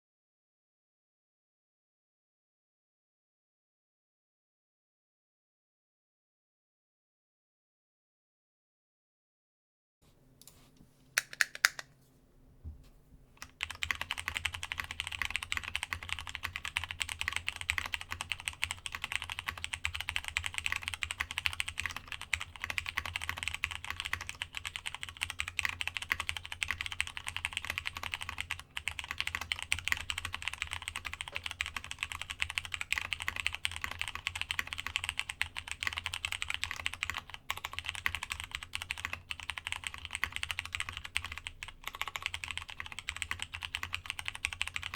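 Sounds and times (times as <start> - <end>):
fast typing on mechanical keyboard: 13.4 - 44.9.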